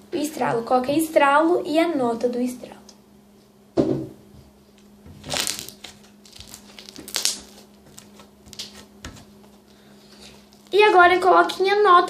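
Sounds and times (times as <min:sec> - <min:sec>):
slime popping and crackling: 0:05.2 - 0:08.8.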